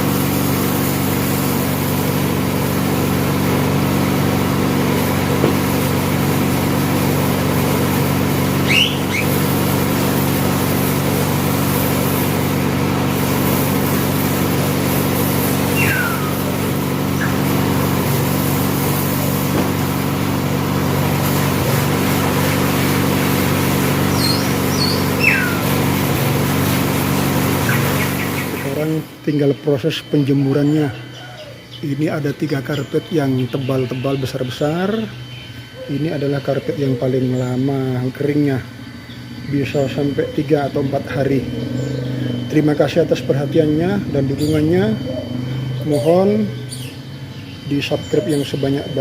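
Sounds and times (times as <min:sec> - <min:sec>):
machine motor humming: 0:00.0 - 0:49.0
high falling chirps: 0:08.5 - 0:09.6, 0:15.2 - 0:20.6, 0:23.8 - 0:25.9, 0:32.5 - 0:49.0.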